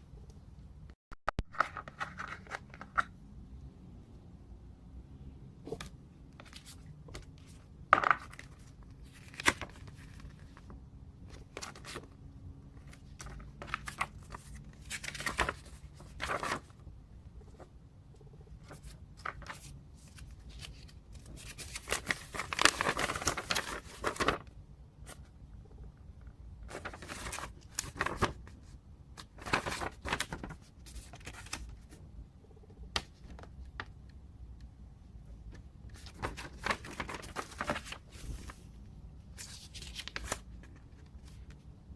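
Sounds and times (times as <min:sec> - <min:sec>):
packaging rustling and tearing: 0:20.5 - 0:24.4.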